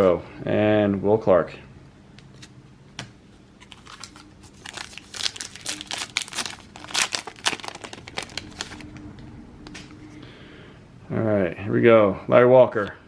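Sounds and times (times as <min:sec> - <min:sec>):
wrapper tearing and crinkling: 0:03.6 - 0:09.0.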